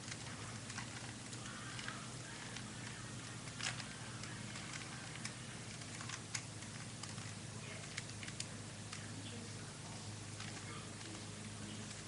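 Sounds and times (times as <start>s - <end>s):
plastic puzzle cube clicking: 0.0s - 9.0s.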